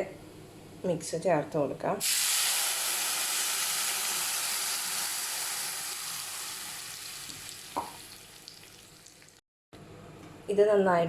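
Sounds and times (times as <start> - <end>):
paste sizzling in hot oil: 2.0 - 9.1.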